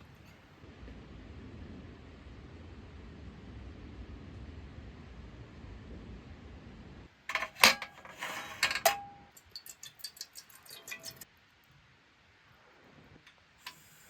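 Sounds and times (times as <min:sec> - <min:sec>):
cookware clinking: 0:07.3 - 0:11.2.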